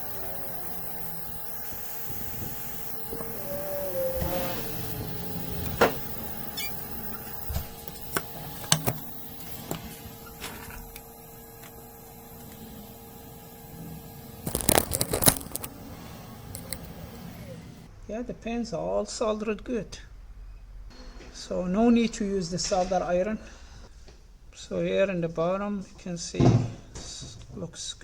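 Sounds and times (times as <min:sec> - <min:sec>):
metal tools tapping circuit board: 0:00.0 - 0:11.0
electrical whine: 0:00.0 - 0:17.9.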